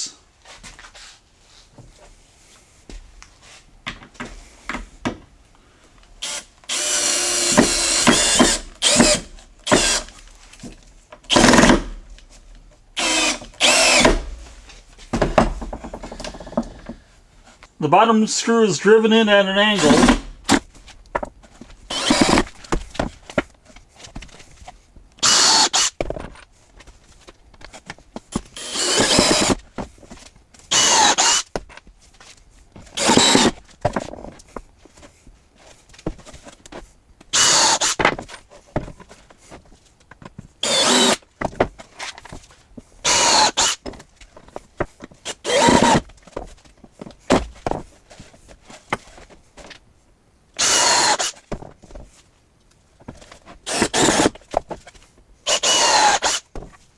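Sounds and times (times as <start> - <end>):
screw gun driving screws into wood: 6.2 - 10.2, 11.3 - 12.2, 13.0 - 14.5, 19.8 - 20.7, 21.9 - 23.1, 25.2 - 26.0, 28.3 - 29.6, 30.7 - 31.6, 32.9 - 33.6, 37.3 - 38.2, 40.6 - 41.3, 43.0 - 44.0, 45.2 - 46.1, 50.6 - 51.5, 53.6 - 54.4, 55.5 - 56.5.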